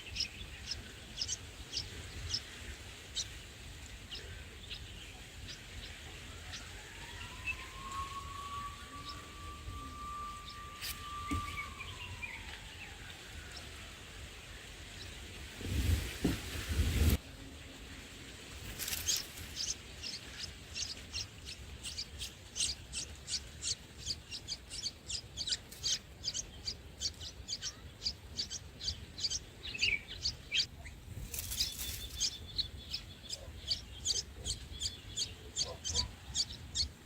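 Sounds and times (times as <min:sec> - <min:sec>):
birds chirping: 0:00.0 - 0:16.4, 0:18.6 - 0:37.0
rustling: 0:15.5 - 0:17.2, 0:18.5 - 0:19.8, 0:31.1 - 0:32.4.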